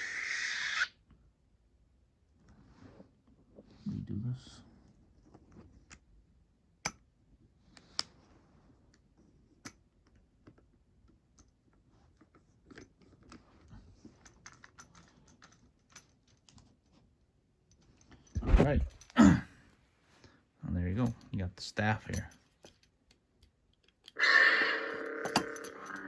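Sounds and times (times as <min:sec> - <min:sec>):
plastic parts clicking: 0:25.2 - 0:26.0.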